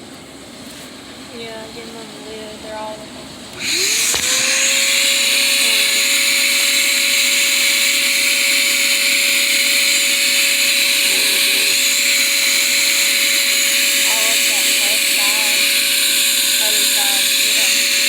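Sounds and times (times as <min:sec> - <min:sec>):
small vacuum motor whine: 0:00.0 - 0:18.0.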